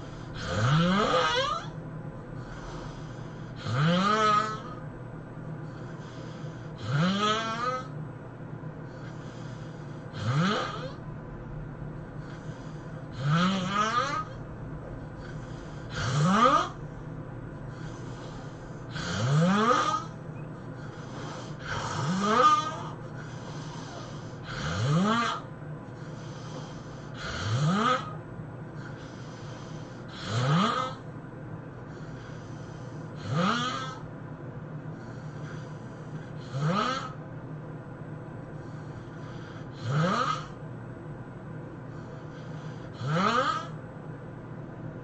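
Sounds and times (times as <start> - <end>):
person snoring: 0.0 - 1.8, 2.4 - 4.8, 5.8 - 8.0, 9.0 - 11.0, 12.2 - 14.4, 15.2 - 16.9, 17.7 - 20.2, 20.8 - 25.5, 26.1 - 28.2, 28.8 - 31.1, 32.0 - 34.1, 35.2 - 37.2, 38.7 - 40.6, 42.3 - 43.8
soft breathy exhale: 23.2 - 24.5.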